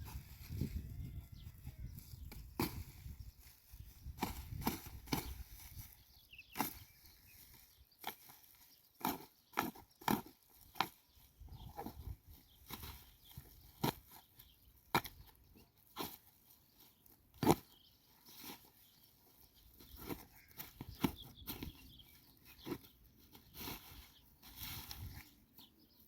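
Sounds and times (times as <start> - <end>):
sharp knocks and crunches: 2.2 - 3.1, 9.0 - 11.0.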